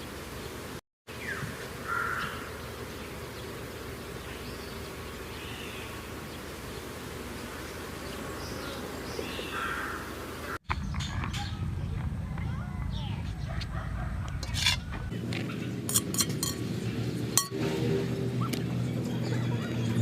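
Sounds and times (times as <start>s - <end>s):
background hiss and hum: 0.0s - 10.6s
bird calling: 1.1s - 3.5s, 7.5s - 11.6s.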